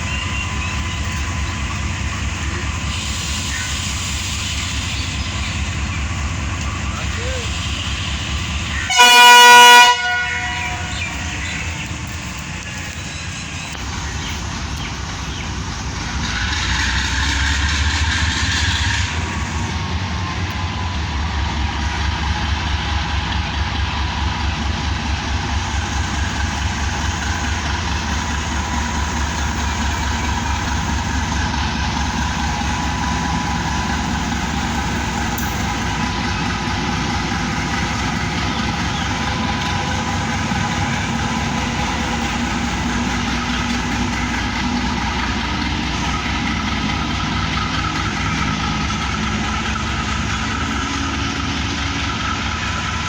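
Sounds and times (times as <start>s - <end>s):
train locomotive engine throbbing: 0.0s - 53.0s
hiss: 1.7s - 8.8s.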